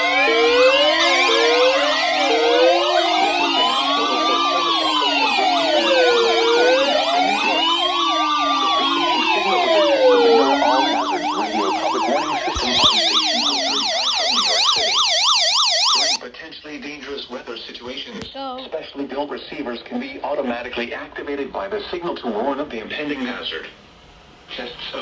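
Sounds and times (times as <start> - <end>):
slow wailing siren: 0.0 - 16.2
yelping sirens: 0.0 - 16.2.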